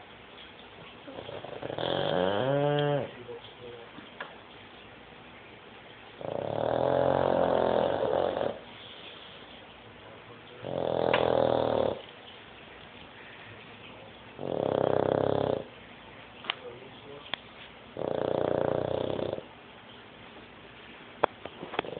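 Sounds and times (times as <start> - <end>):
dog snoring: 1.0 - 3.2, 6.2 - 9.4, 10.6 - 12.1, 14.4 - 15.7, 17.9 - 19.5.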